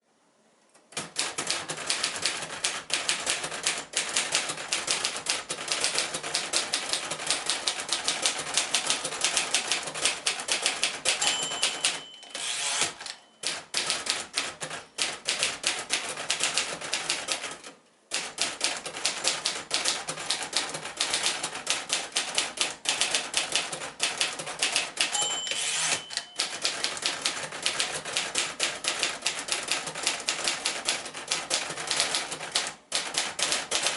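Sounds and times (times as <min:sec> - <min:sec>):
typewriter keystrokes: 0:00.9 - 0:33.9
typewriter margin bell ring: 0:11.1 - 0:13.6, 0:25.0 - 0:27.0.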